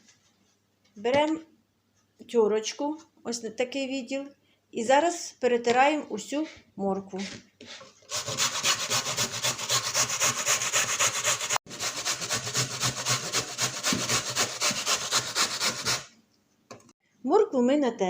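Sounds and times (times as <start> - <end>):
carrots rasping on a grater: 7.7 - 16.1.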